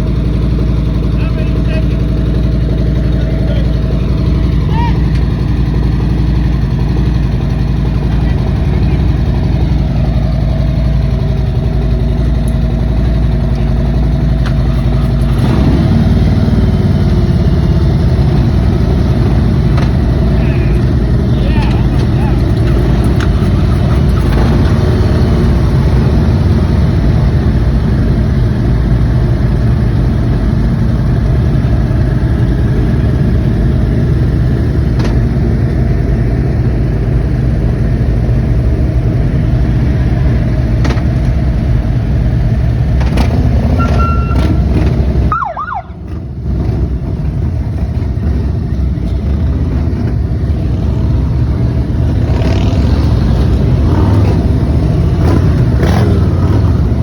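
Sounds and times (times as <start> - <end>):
motorcycle engines rumbling: 0.0 - 57.0
siren chirp: 43.8 - 44.6, 45.3 - 46.0.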